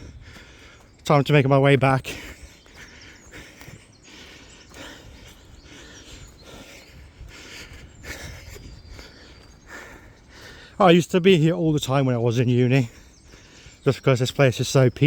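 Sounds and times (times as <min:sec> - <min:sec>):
person breathing: 0:00.0 - 0:01.0, 0:02.2 - 0:10.8, 0:13.0 - 0:13.8
wind rumble on microphone: 0:00.0 - 0:01.0, 0:04.8 - 0:10.3
footsteps on muddy path: 0:00.0 - 0:15.0.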